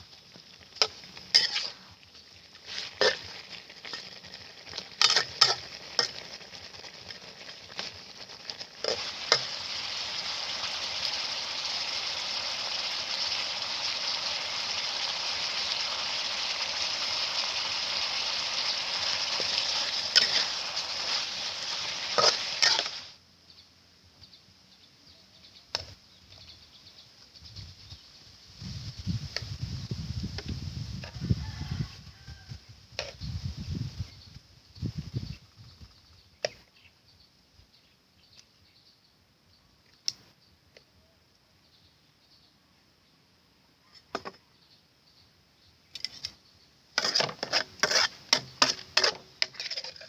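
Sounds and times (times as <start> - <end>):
food sizzling in a pan: 0.0 - 23.2, 25.6 - 36.7, 46.9 - 50.0
faint click: 39.8 - 41.4.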